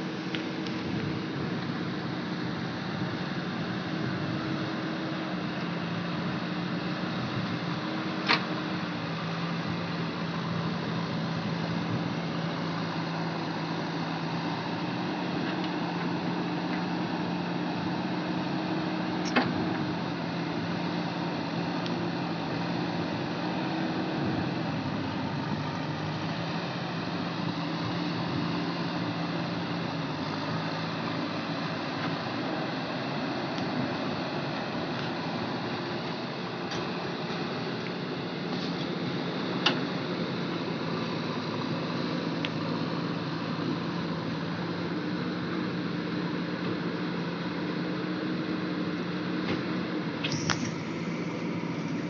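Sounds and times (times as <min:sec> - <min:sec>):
diesel engine droning: 0:00.0 - 0:52.0.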